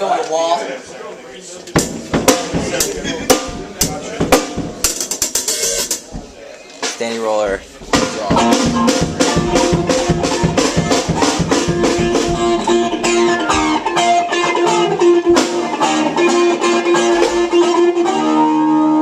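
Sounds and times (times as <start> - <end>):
drum kit steady beat: 1.8 - 18.5
electric guitar: 8.3 - 19.0.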